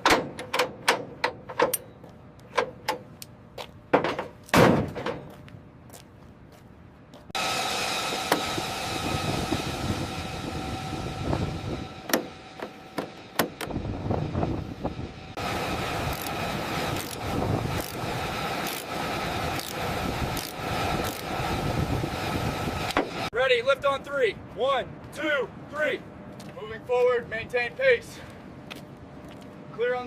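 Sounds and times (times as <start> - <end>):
jet engine whining: 7.4 - 23.3.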